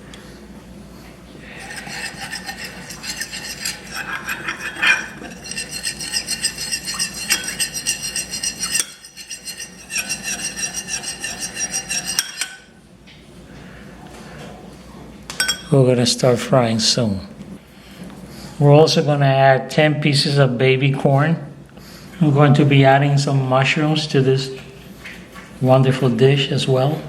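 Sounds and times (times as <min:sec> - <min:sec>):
spoon scraping in ringing bowl: 0:01.5 - 0:12.8, 0:15.4 - 0:15.8.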